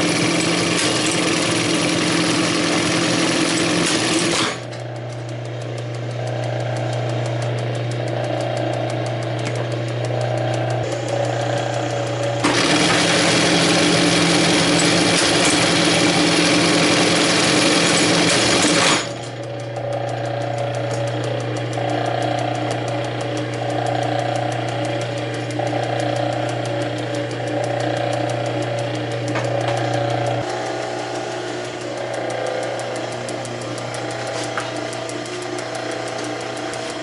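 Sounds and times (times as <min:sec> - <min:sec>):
sewing machine motor hum: 0:00.0 - 0:37.0.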